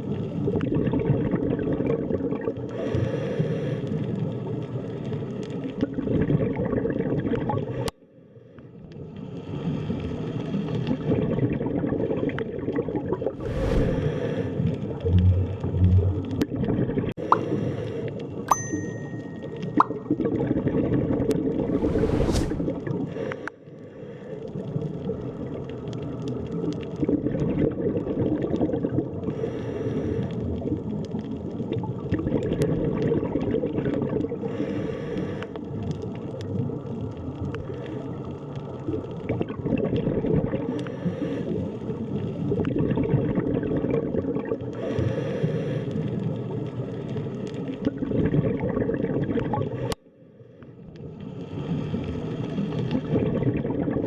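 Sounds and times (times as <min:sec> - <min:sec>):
muffled underwater churning rumble: 0:08.8 - 0:18.4, 0:20.2 - 0:23.1, 0:24.0 - 0:49.9
hissy bubbling bursts: 0:13.4 - 0:14.6, 0:21.6 - 0:23.0.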